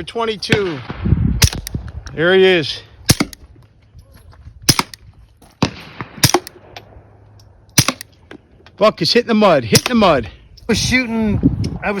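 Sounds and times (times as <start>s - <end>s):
suppressed pistol shots: 0.8s - 1.8s, 3.1s - 3.4s, 4.7s - 5.0s, 5.6s - 6.8s, 7.8s - 8.1s.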